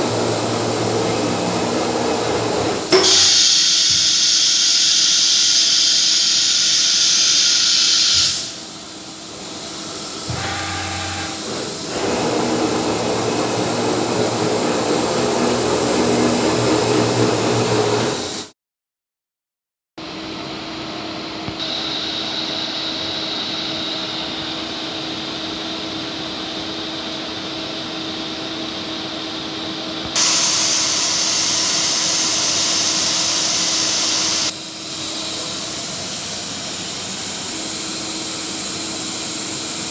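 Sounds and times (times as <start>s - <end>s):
router high-pitched hiss: 2.9s - 8.7s, 30.2s - 39.9s.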